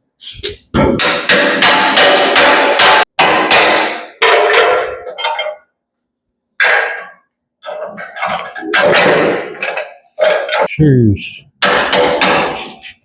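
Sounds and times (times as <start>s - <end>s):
hammer striking steel: 0.8s - 5.1s, 11.6s - 12.8s.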